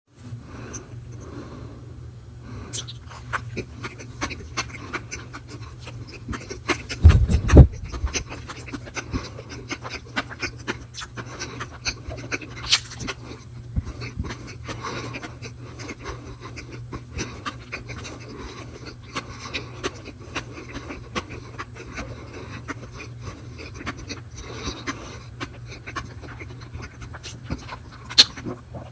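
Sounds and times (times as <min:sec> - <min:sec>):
steady low hum: 0:00.2 - 0:28.9
breathing: 0:00.3 - 0:02.8, 0:18.3 - 0:23.6
wet mouth clicks: 0:02.7 - 0:09.3, 0:10.2 - 0:13.2, 0:25.4 - 0:28.9
chewing and mouth sounds: 0:02.7 - 0:28.9
loud low thump: 0:07.0 - 0:08.2.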